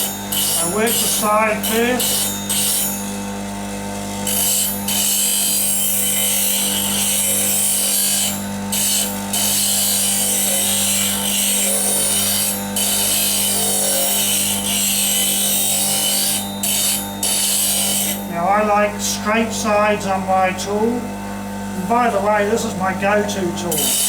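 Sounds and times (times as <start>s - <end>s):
metal tool grinding hiss: 0.0s - 3.1s, 4.3s - 18.3s, 23.7s - 24.0s
bench grinder humming: 0.0s - 24.0s.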